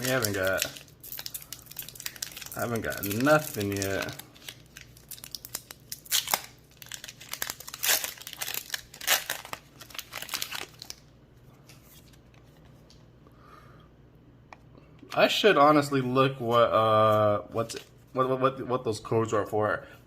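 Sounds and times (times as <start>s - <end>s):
foil wrapper tearing and crinkling: 0.0s - 11.0s.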